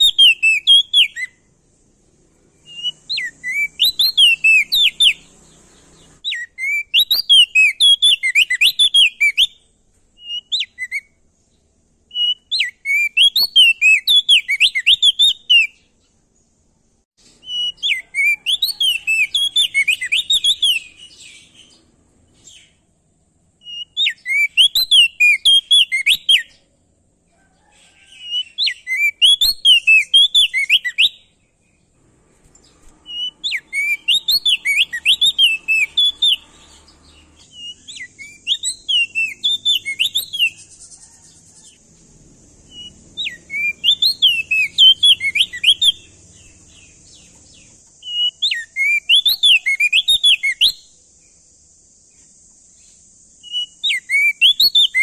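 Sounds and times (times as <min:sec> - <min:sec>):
bird singing whistled phrases: 0:00.0 - 0:01.5, 0:02.6 - 0:05.3, 0:06.1 - 0:11.2, 0:12.1 - 0:15.8, 0:17.4 - 0:21.8, 0:23.6 - 0:26.6, 0:28.0 - 0:31.4, 0:32.8 - 0:41.7, 0:42.7 - 0:50.9, 0:53.4 - 0:55.0.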